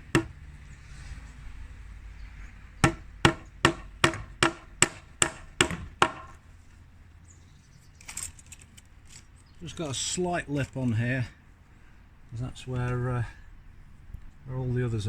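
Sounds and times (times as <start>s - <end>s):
hammer blows on nail: 0.0s - 0.4s, 2.8s - 6.4s.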